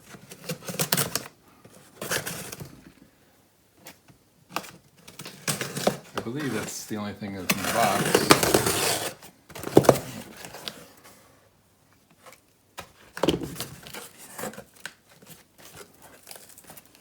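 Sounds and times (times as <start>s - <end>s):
cardboard box being handled: 7.5s - 10.9s.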